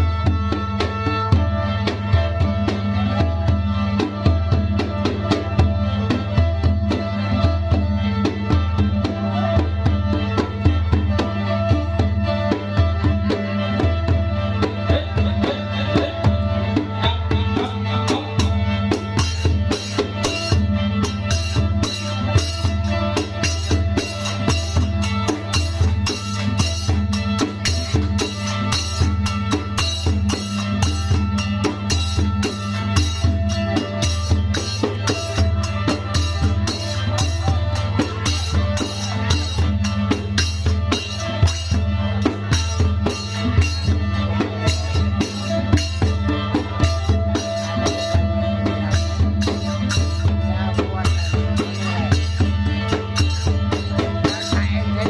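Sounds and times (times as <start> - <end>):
fast drum beat: 13.8 - 55.0.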